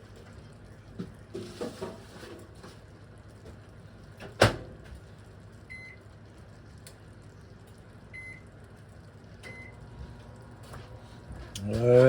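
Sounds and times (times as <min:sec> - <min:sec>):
appliance electronic beeps: 0:08.2 - 0:08.4, 0:09.5 - 0:09.8.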